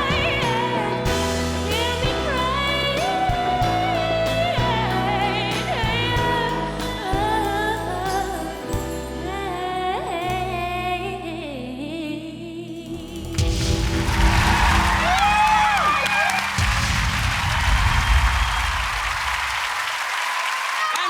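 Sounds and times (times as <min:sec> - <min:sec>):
pop band backing: 0:00.0 - 0:11.6, 0:12.7 - 0:20.1
woman singing with vibrato: 0:00.0 - 0:13.2.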